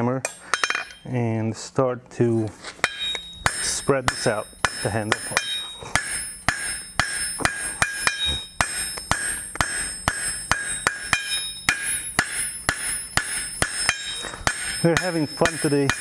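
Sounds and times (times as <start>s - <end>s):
hammer striking steel on anvil: 0.2s - 1.1s, 2.8s - 16.0s.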